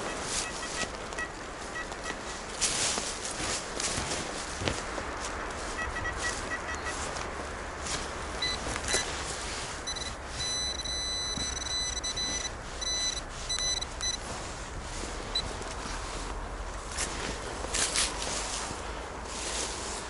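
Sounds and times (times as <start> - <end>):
metal detector beeping: 0.0 - 2.4, 5.8 - 7.1, 8.4 - 9.2, 9.8 - 14.2
road traffic rumble: 0.0 - 20.0.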